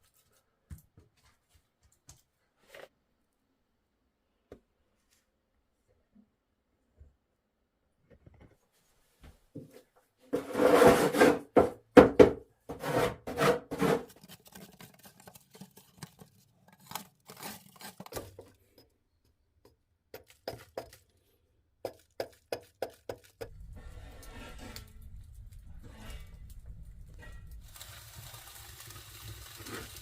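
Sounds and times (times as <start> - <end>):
rustling scrape: 10.3 - 11.5, 12.8 - 18.3, 23.4 - 30.0.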